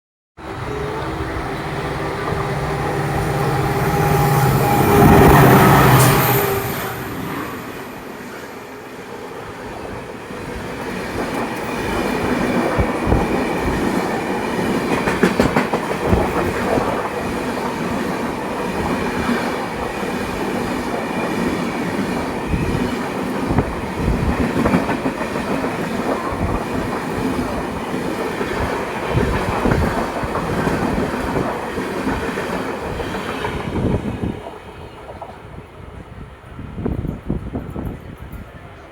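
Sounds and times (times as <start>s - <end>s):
train coaches rumbling past: 0.4s - 38.9s
wheels clacking over rail joints: 10.4s - 33.5s.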